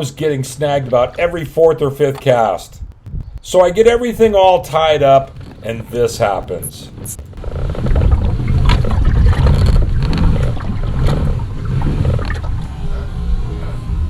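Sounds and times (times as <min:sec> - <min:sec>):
heavy low rumble: 0:02.6 - 0:14.0
water sloshing against kayak: 0:07.1 - 0:13.4.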